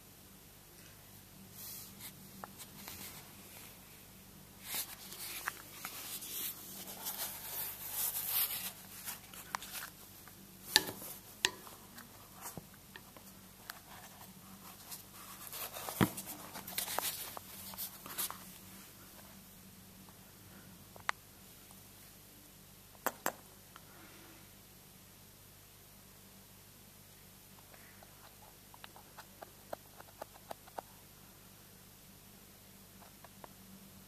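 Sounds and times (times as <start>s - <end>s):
soft rustling and scratching: 1.5s - 19.4s.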